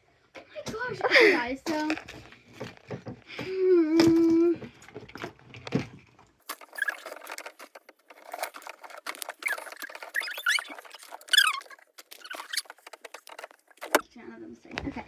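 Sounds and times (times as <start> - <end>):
small objects rummaged through: 0.3 - 14.1
short high squeaks: 6.6 - 14.0.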